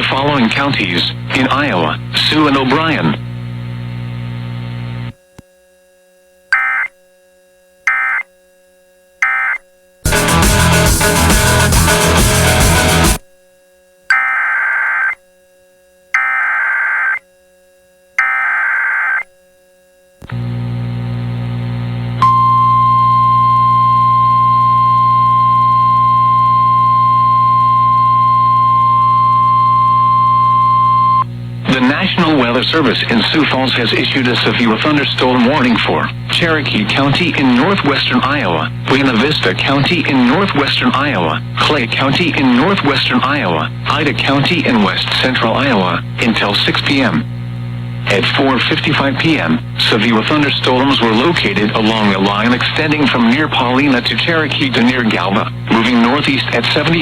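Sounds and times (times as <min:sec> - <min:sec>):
click: 0:05.3 - 0:05.5
digital data tone bursts: 0:06.5 - 0:06.9, 0:07.9 - 0:08.2, 0:09.2 - 0:09.6, 0:14.1 - 0:15.2, 0:16.2 - 0:17.2
steady warning alarm tone: 0:06.5 - 0:07.0, 0:07.9 - 0:08.3, 0:09.2 - 0:09.6, 0:14.1 - 0:15.2, 0:16.1 - 0:17.2, 0:18.2 - 0:19.3, 0:22.2 - 0:31.2
electrical buzz: 0:20.2 - 0:31.7
low hum: 0:20.4 - 0:31.6.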